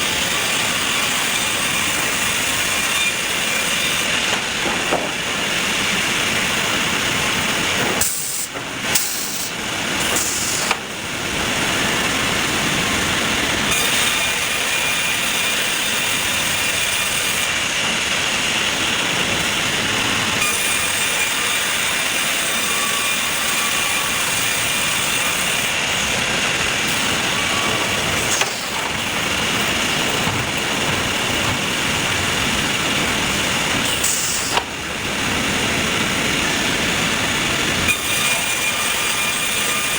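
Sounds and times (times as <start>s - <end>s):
sawmill machinery hissing: 0.0s - 39.9s.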